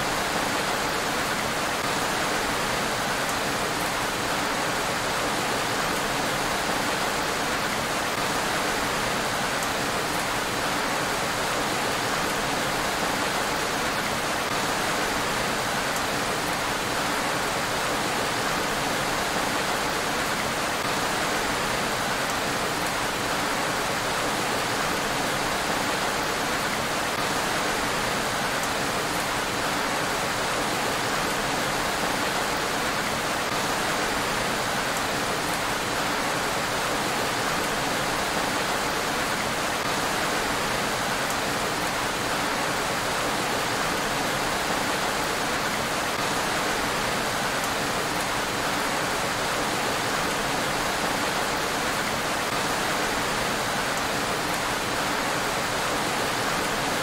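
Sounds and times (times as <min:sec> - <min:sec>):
rain falling on a road: 0:00.0 - 0:57.0.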